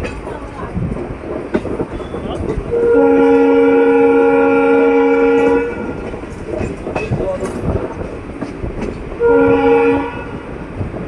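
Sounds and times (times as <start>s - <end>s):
train rumble and clickety-clack: 0.0s - 11.0s
locomotive horn chord: 2.7s - 6.0s, 9.2s - 10.4s.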